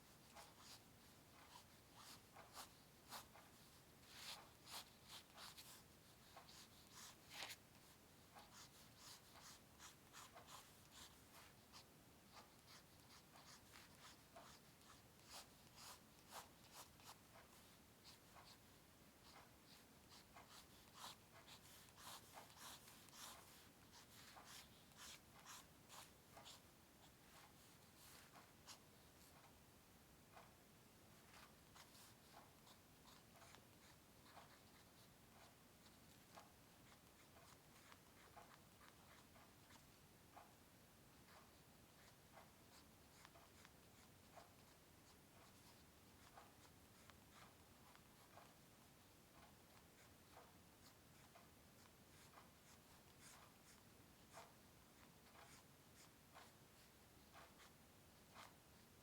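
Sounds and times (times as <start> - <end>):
drawing tool scratching paper: 0.1 - 28.8.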